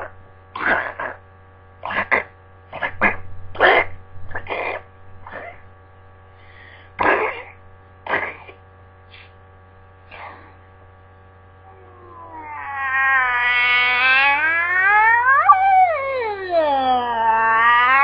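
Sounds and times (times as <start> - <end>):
steady mains hum: 0.0 - 18.0
person imitating cat yowl: 11.7 - 18.0.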